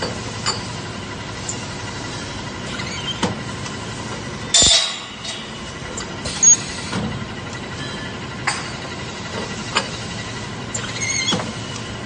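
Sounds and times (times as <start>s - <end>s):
machinery hum: 0.0s - 12.0s
sharp metallic clank: 4.5s - 5.5s.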